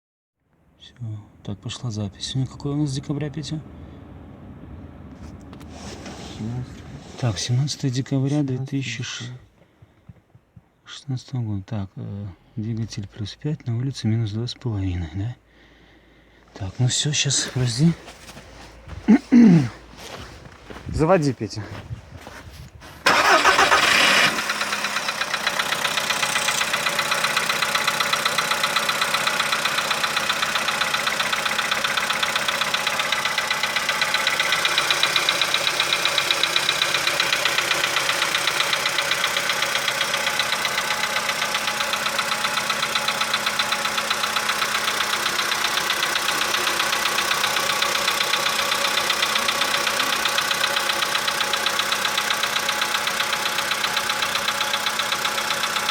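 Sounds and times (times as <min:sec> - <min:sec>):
car engine starting and idling: 0:00.5 - 0:08.4, 0:15.5 - 0:55.9
engine knocking: 0:23.1 - 0:55.9.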